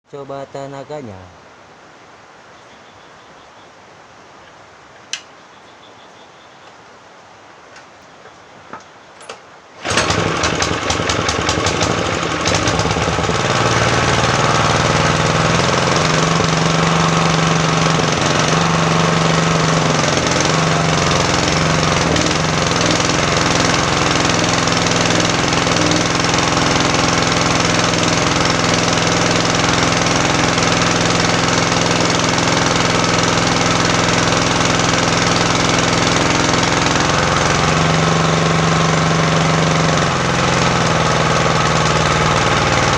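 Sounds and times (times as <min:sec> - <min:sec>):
engine running: 0:09.8 - 0:42.9.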